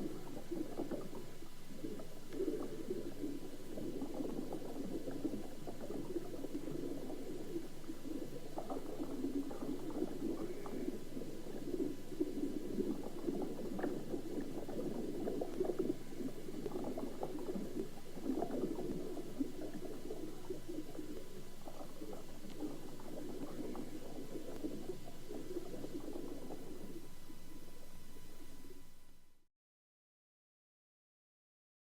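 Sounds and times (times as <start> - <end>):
underwater bubbling and gurgling: 0.0 - 29.0.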